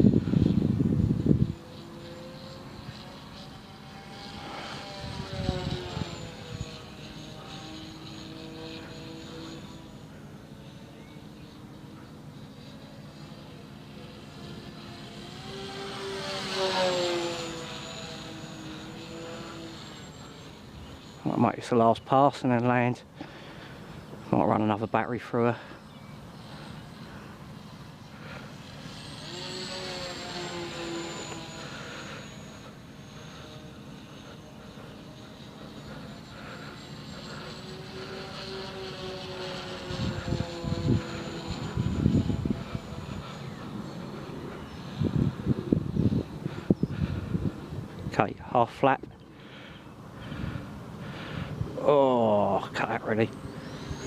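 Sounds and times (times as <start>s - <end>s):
wind buffeting microphone: 0.0s - 1.8s, 39.8s - 49.1s
model plane motors whining: 0.0s - 54.0s.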